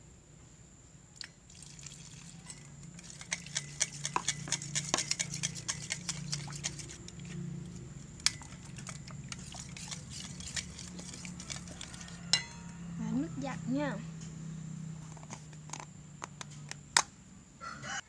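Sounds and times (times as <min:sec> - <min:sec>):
low steady hum: 0:00.0 - 0:17.7
containers and utensils clicking: 0:01.8 - 0:12.6.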